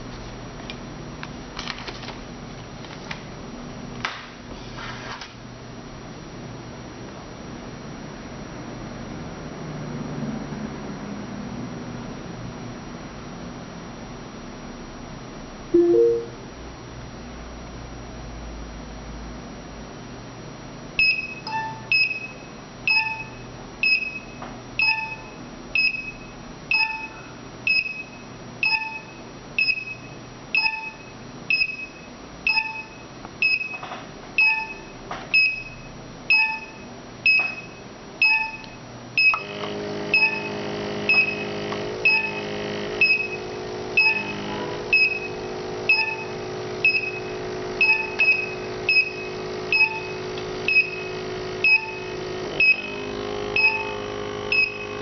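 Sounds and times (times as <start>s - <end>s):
short electronic beeps: 15.8s - 16.4s, 45.0s - 53.0s, 53.6s - 55.0s.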